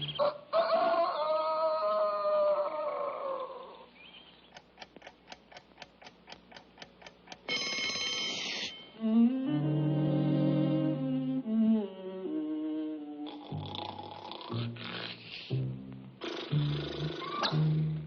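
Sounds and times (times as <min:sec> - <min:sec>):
clock ticking: 0:04.5 - 0:08.8
alarm clock bell ringing: 0:07.5 - 0:08.9
held musical note: 0:07.5 - 0:13.3.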